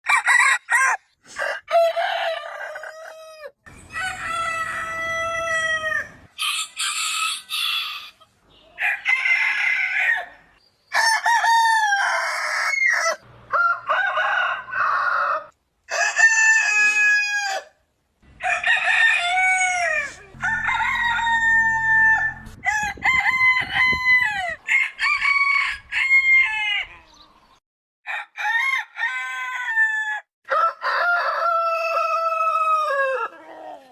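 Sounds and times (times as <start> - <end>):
roosters crowing: 0.0 - 27.3, 28.1 - 33.9.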